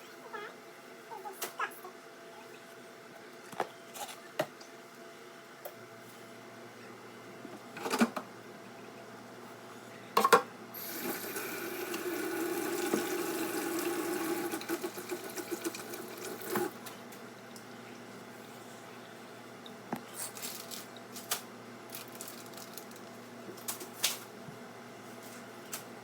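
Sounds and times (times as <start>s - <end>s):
water running: 10.8s - 18.6s.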